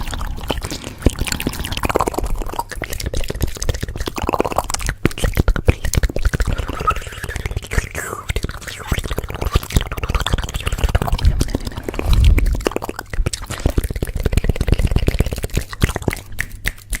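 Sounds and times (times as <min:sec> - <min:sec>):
low rumble: 0:00.0 - 0:03.0, 0:10.6 - 0:13.4.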